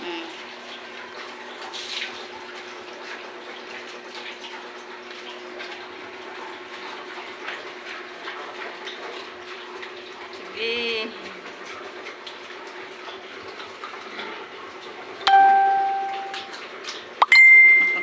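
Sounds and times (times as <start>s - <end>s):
water running: 0.0s - 18.0s
faint steady hum: 15.3s - 16.6s.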